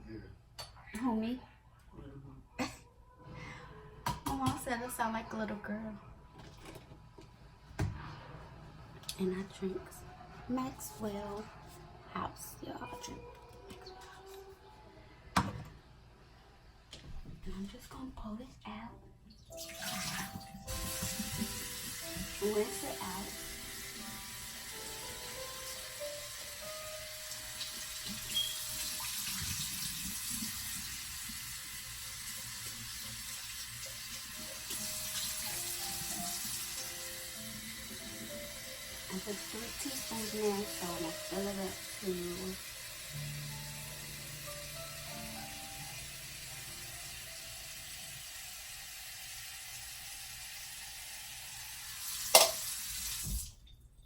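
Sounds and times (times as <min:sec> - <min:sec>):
tap water running into sink: 0:19.5 - 0:53.6.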